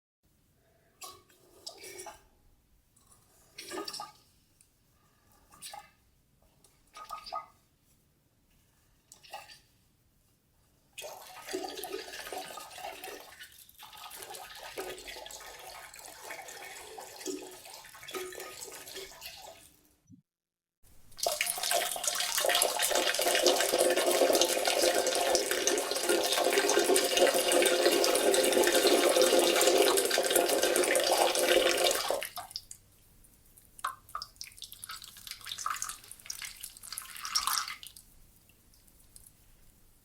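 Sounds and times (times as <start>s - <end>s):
water drips: 21.1s - 32.9s, 33.8s - 39.4s
urine stream splashing in toilet: 21.2s - 32.7s, 33.8s - 38.0s.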